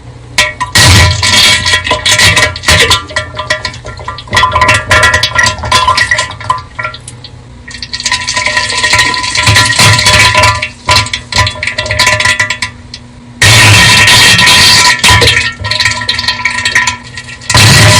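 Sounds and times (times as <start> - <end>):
distorted wet spluttering: 0.6 - 17.9.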